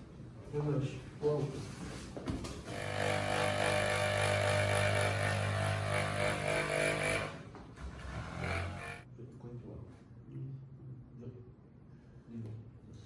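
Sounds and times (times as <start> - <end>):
small electric motor humming: 2.7 - 7.4, 8.1 - 9.0.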